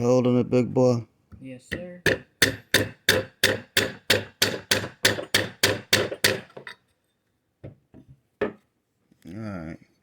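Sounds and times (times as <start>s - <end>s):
small hammer tapping metal: 1.7s - 6.8s.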